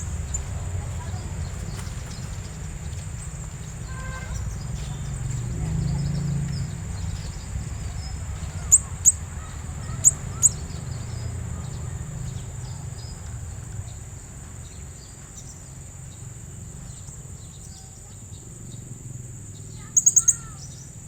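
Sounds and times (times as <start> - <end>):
low rumble: 0.0 - 15.2
parrot shrill chirps: 19.9 - 20.7.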